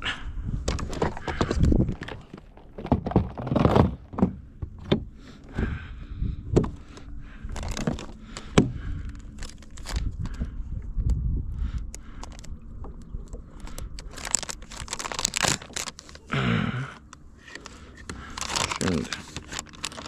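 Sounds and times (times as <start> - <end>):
rustling and crinkling: 0.6 - 5.7, 6.6 - 20.0
irregular knocks and thunks: 2.8 - 5.7.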